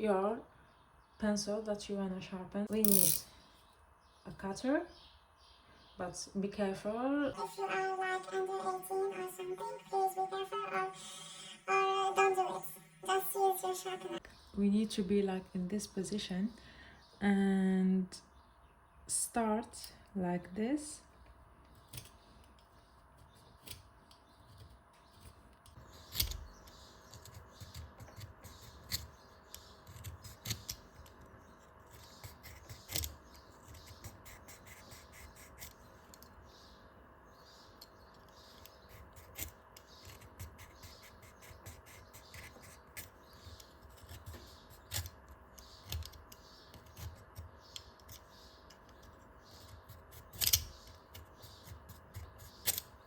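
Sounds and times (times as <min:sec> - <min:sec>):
knife blade scraping pencil: 0:31.9 - 0:35.8, 0:38.4 - 0:45.1.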